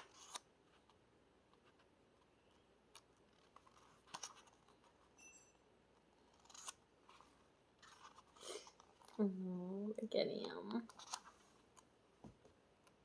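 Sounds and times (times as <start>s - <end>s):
photo book pages turning: 0.0s - 1.0s, 1.6s - 5.2s, 6.0s - 9.2s, 10.8s - 11.9s.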